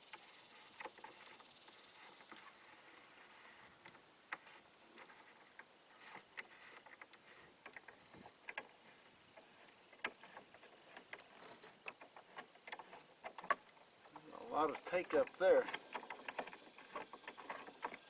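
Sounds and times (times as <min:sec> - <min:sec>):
light clicks and taps: 0:03.8 - 0:18.0.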